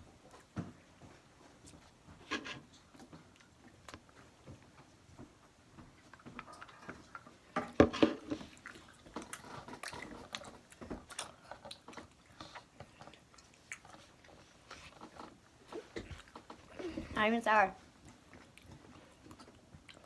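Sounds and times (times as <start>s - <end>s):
person chewing candy: 8.4s - 17.0s, 17.9s - 20.0s.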